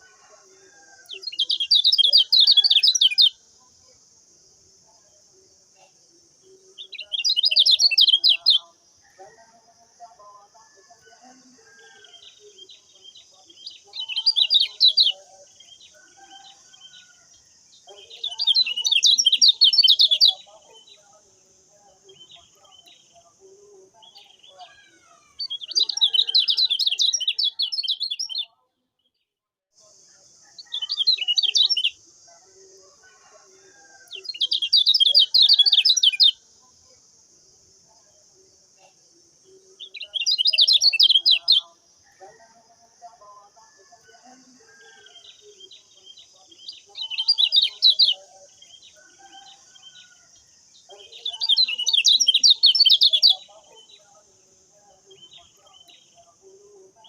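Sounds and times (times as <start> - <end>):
bird chattering song: 1.1 - 3.4, 5.8 - 8.8, 11.9 - 17.2, 17.8 - 21.2, 22.0 - 28.6, 30.6 - 32.0, 34.1 - 36.4, 39.6 - 41.8, 44.9 - 50.2, 50.8 - 54.2.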